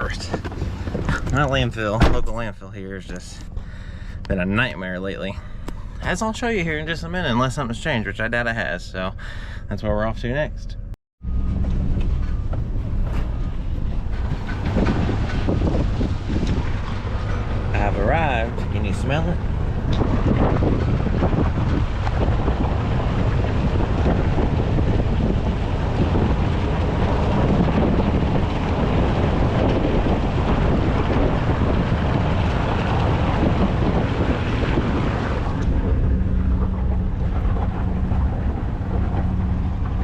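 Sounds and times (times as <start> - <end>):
wind rushing over microphone: 0.0 - 2.2, 11.8 - 40.0
truck driving: 0.0 - 40.0.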